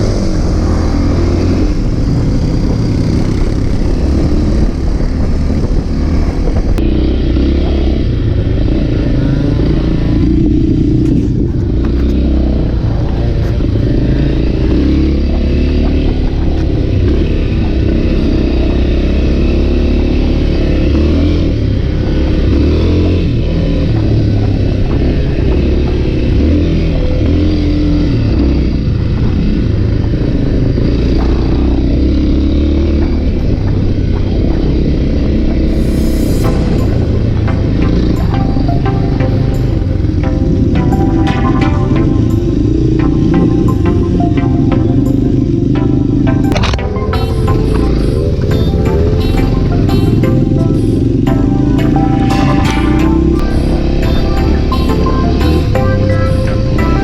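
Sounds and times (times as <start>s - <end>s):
off-road motorcycle engine: 0.0s - 57.0s.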